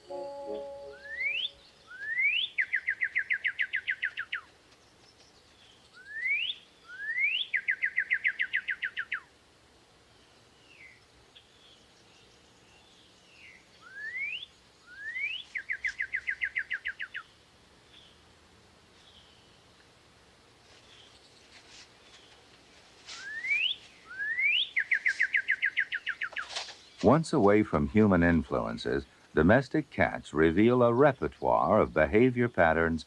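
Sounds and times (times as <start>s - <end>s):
songbird whistles and trill: 0.0s - 4.4s, 5.9s - 9.3s, 13.4s - 17.2s, 23.1s - 26.5s.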